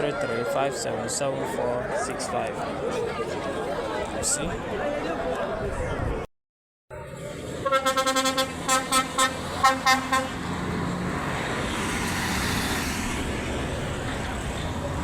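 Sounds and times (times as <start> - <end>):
vehicle horn honking: 7.6 - 10.4.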